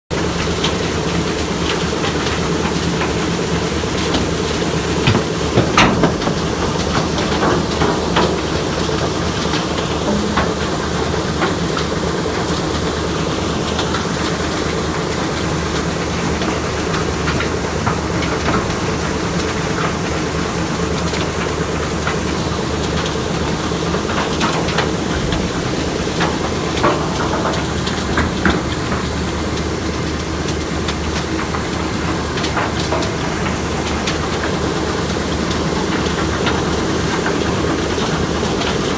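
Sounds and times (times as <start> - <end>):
machinery drone: 6.8 - 19.9.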